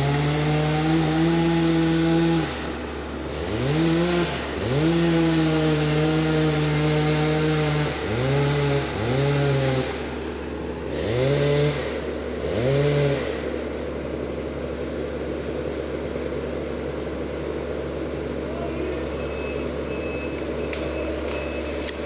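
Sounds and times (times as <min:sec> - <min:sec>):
chainsaw revving: 0:00.0 - 0:13.8
low rumble of machinery: 0:08.0 - 0:22.0.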